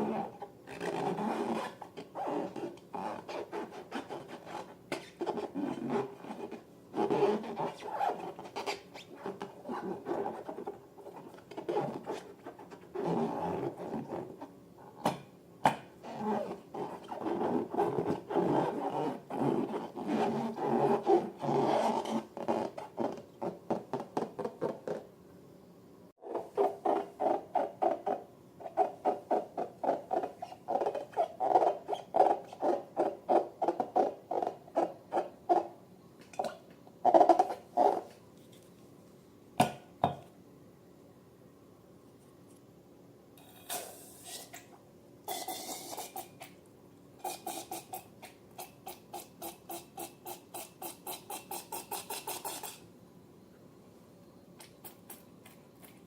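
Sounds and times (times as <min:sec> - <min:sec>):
rubbing and scraping balloons: 0:00.0 - 0:14.5, 0:16.0 - 0:25.0.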